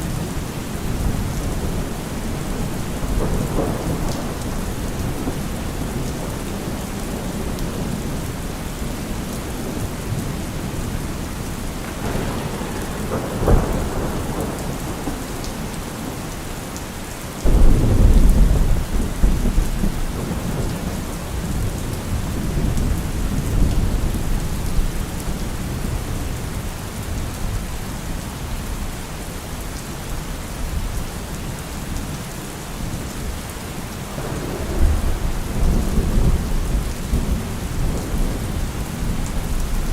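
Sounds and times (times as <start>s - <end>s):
rumbling thunderclap: 0.0s - 26.4s, 34.0s - 39.9s
heavy rain: 0.0s - 39.9s
thunder crack: 1.0s - 7.4s, 11.8s - 16.2s, 17.4s - 24.2s, 34.1s - 39.9s.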